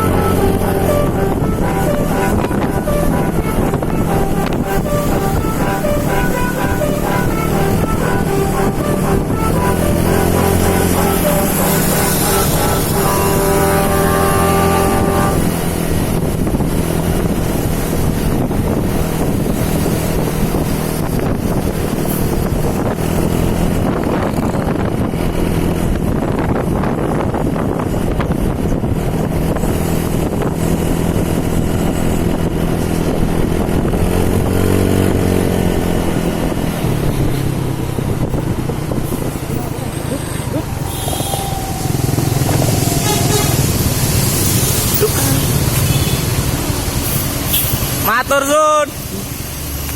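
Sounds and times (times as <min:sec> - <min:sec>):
rising and falling tone: 0:00.0 - 0:15.6, 0:39.1 - 0:45.5
musical bus horn chord: 0:00.0 - 0:15.8, 0:40.8 - 0:46.4
bus diesel engine running: 0:00.0 - 0:49.9.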